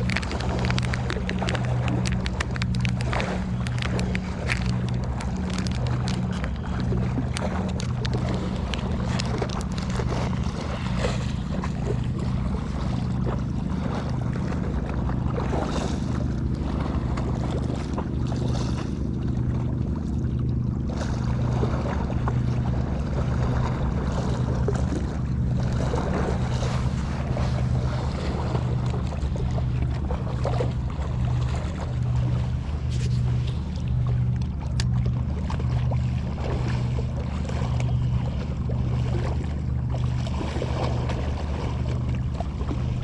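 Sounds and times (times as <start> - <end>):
small clicks: 0.0 - 10.1
boat engine droning: 0.0 - 43.0
sea noise: 0.0 - 43.0
wind: 0.0 - 43.0.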